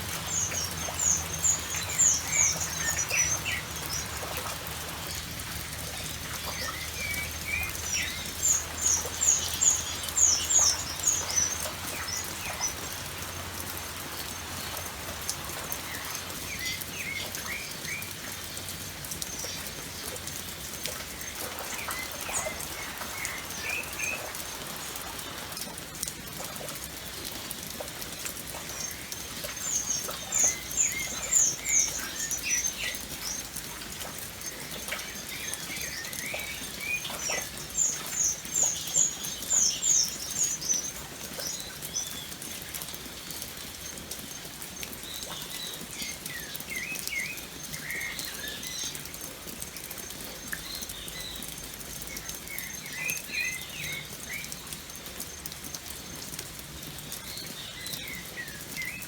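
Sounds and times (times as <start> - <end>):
birds calling: 0.0 - 25.7, 28.4 - 42.4
light rain: 0.0 - 59.0.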